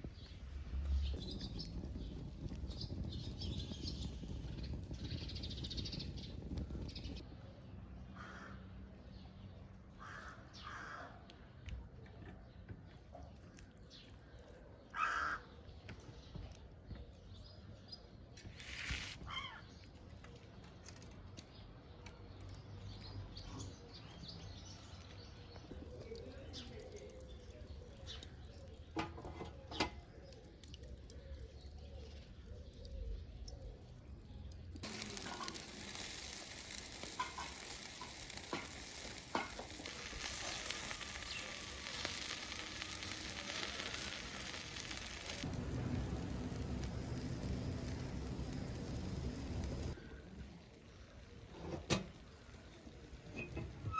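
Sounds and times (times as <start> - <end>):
steady hiss: 34.8 - 53.9
low rumble: 44.4 - 50.0.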